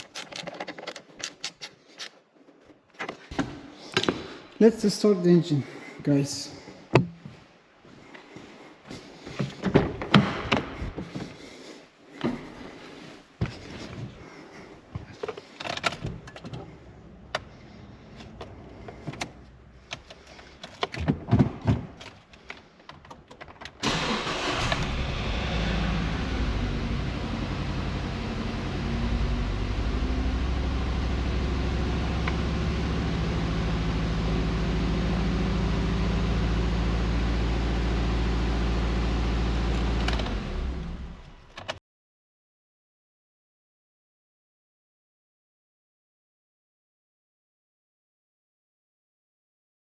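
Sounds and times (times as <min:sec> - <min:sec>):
car engine starting and idling: 0:23.7 - 0:41.8.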